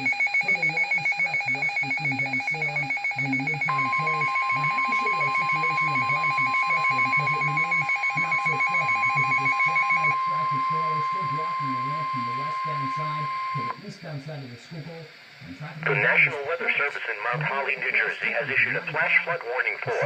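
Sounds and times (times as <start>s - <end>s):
steady alert tone: 0.0s - 13.7s
pulsing two-tone alert signal: 0.0s - 13.8s.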